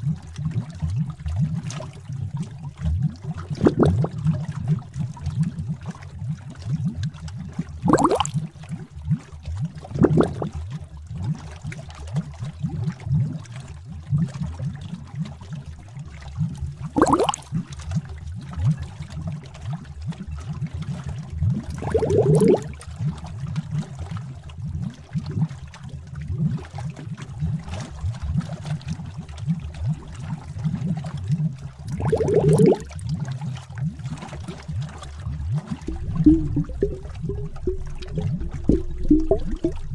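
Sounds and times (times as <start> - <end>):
thick liquid bubbling: 0.0 - 39.9
glugging bloop rising in pitch: 3.5 - 4.6, 7.8 - 8.5, 9.8 - 10.6, 17.0 - 17.6, 21.5 - 22.8, 31.7 - 33.4, 34.0 - 39.9.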